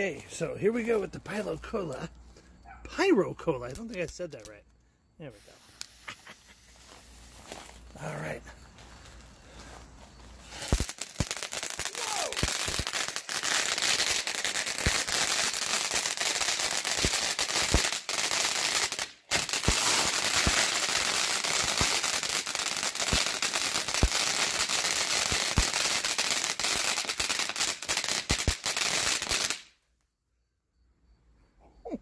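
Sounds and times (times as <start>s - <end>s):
fountain firework hissing and crackling: 5.2s - 7.6s, 10.4s - 29.6s
sharp firework pops: 5.4s - 6.4s, 10.6s - 13.3s, 13.9s - 29.7s.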